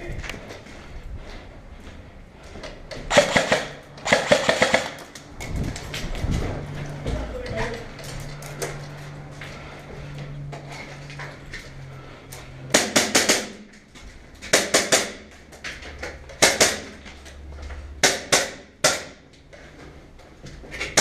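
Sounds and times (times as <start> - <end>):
airsoft gun firing: 3.1 - 5.0, 12.7 - 13.7, 14.5 - 15.3, 16.4 - 16.9.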